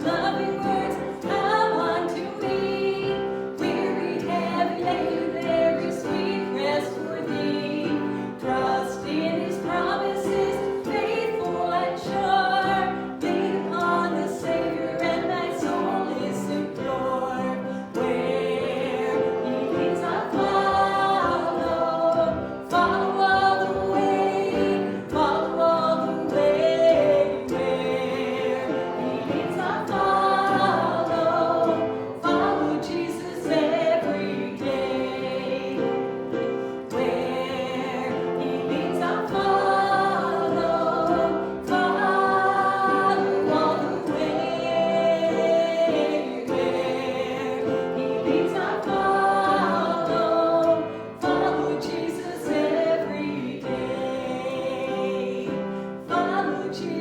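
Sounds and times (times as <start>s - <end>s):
congregation singing a hymn: 0.0s - 57.0s.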